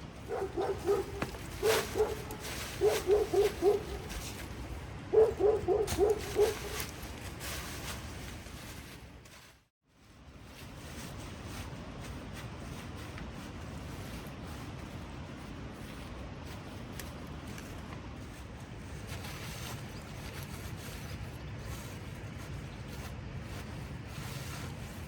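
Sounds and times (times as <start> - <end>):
dog barking: 0.2 - 4.1, 5.1 - 6.8.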